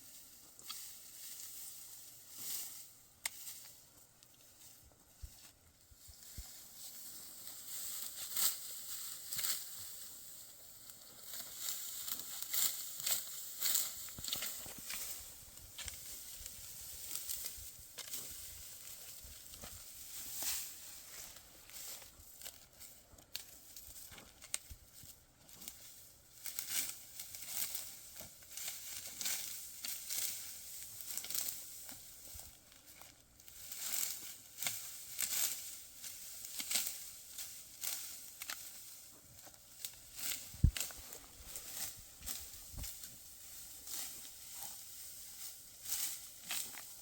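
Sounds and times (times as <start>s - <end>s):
dry wheat stalks crunching: 0.0s - 47.0s.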